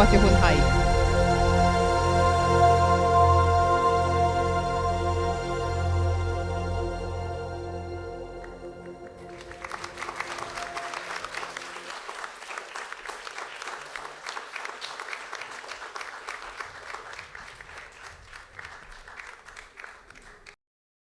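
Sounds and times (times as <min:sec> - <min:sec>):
audience applauding: 0:00.0 - 0:00.8, 0:08.2 - 0:20.6
background music held notes: 0:00.0 - 0:12.2.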